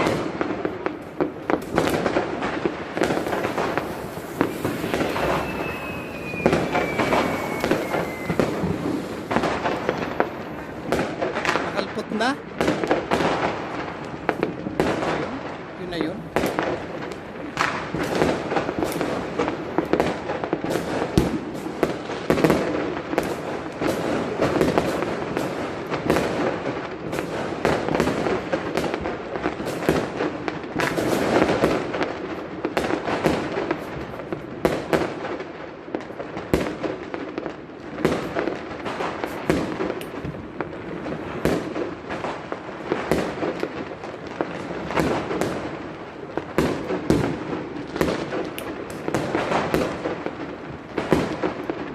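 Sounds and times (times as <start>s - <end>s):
sharp loud firework reports: 0.0s - 35.4s, 38.0s - 51.9s
fireworks bangs and crackling: 0.0s - 51.9s.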